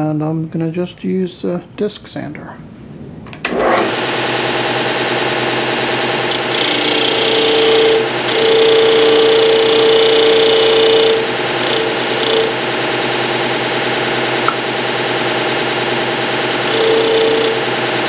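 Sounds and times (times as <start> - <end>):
disc sander running: 3.5 - 18.0
wood grinding against sanding disc: 6.3 - 13.6, 16.2 - 18.0.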